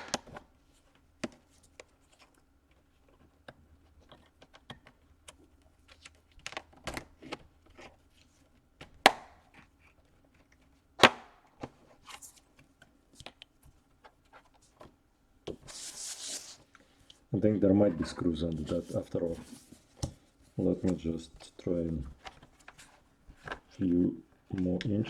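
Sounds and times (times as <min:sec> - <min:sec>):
loud plastic snaps: 0:00.0 - 0:00.4, 0:11.0 - 0:11.4.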